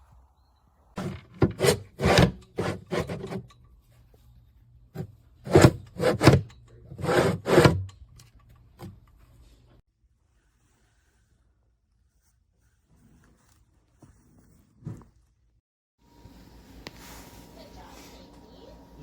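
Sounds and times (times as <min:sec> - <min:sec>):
drawer scraping in and out: 0:01.0 - 0:03.4, 0:05.4 - 0:07.8.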